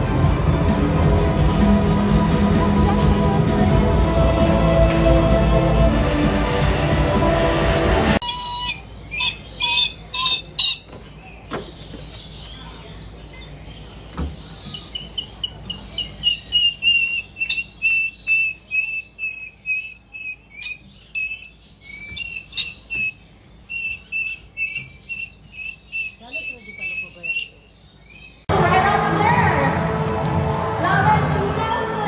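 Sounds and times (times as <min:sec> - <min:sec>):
bird chirping: 0:08.2 - 0:28.5.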